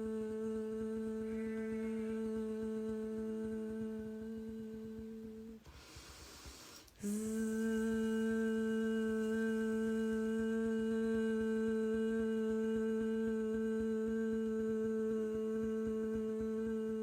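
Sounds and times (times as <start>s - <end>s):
woman humming a steady note: 0.0s - 17.0s
breathy in-breath: 5.6s - 7.0s.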